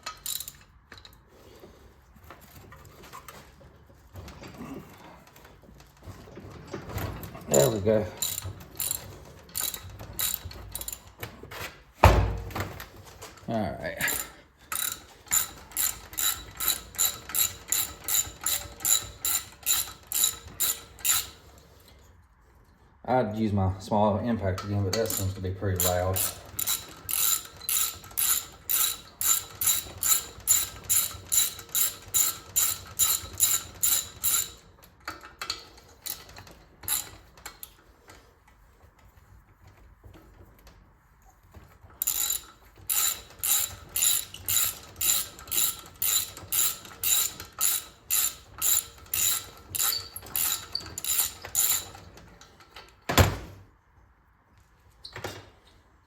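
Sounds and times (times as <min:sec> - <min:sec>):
ratchet wrench clicking: 0:00.0 - 0:01.2, 0:07.5 - 0:11.1, 0:14.0 - 0:21.4, 0:25.0 - 0:34.6, 0:36.9 - 0:37.2, 0:42.0 - 0:52.0.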